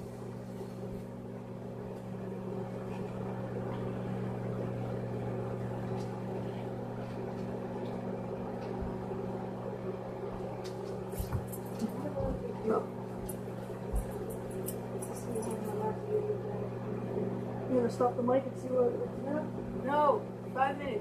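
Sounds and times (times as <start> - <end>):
microwave oven humming: 0.0 - 21.0.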